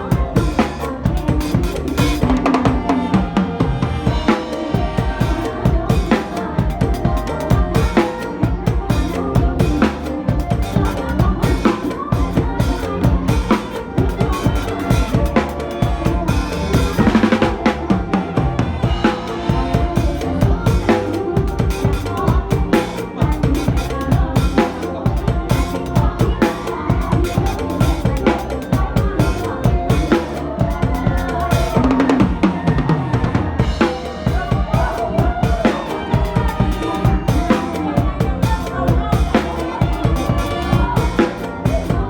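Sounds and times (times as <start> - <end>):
backing music: 0.0 - 42.0
drum kit dance beat: 0.0 - 42.0.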